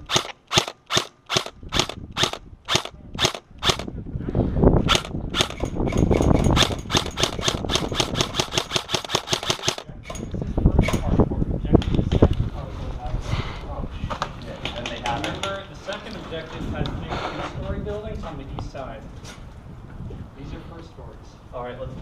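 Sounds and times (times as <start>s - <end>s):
airsoft guns firing: 0.0s - 3.9s, 4.9s - 10.0s.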